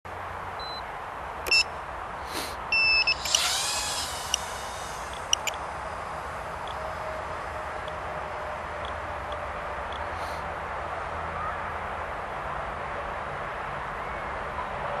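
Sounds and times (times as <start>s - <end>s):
electronic beeps: 2.7s - 3.5s, 4.2s - 5.7s
drone motors whining: 2.8s - 9.0s.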